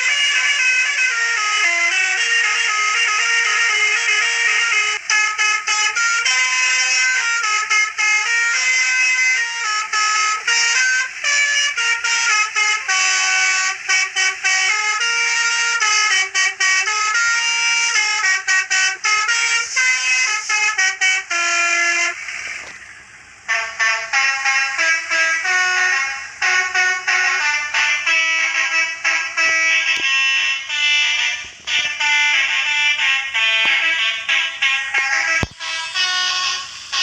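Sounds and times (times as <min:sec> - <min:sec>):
multi-tone air horn tune: 0:00.0 - 0:37.0
air hiss: 0:35.0 - 0:37.0.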